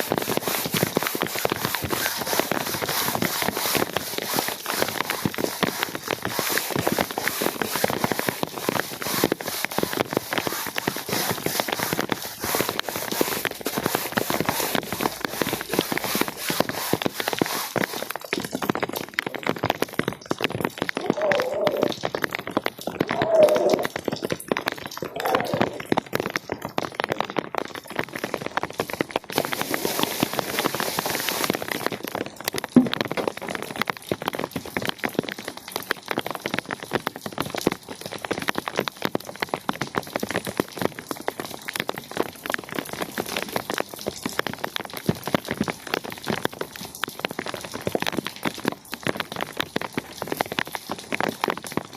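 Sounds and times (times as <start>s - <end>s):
steady hiss: 0.0s - 18.2s, 29.4s - 31.9s
rain drops ticking over hiss: 0.0s - 51.9s.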